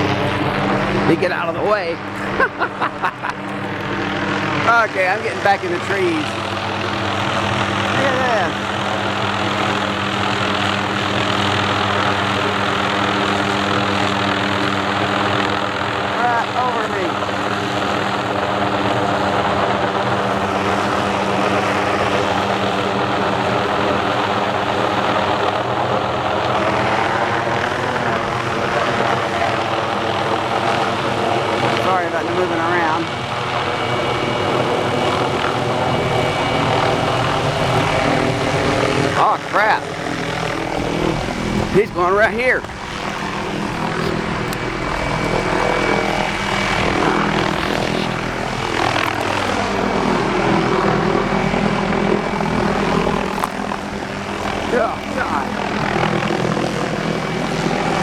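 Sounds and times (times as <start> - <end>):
high whine: 0.0 - 11.0, 32.4 - 56.7
helicopter rotor and turbine drone: 0.0 - 58.0.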